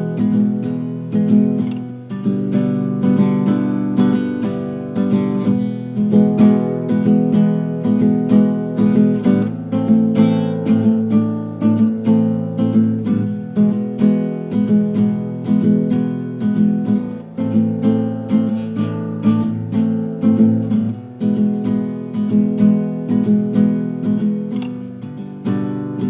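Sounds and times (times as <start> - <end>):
acoustic guitar strumming: 1.6 - 9.4.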